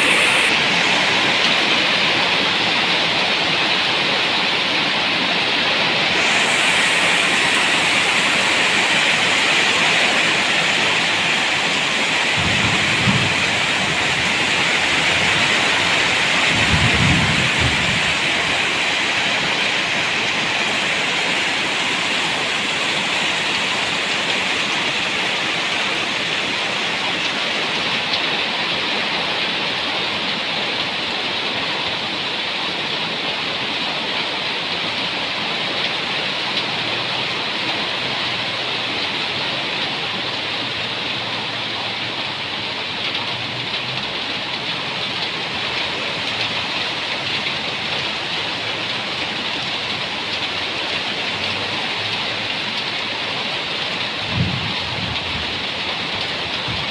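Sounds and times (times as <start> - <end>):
heavy rain: 0.0 - 56.9
low rumbles of thunder: 12.3 - 14.4, 16.4 - 18.6, 54.2 - 55.6.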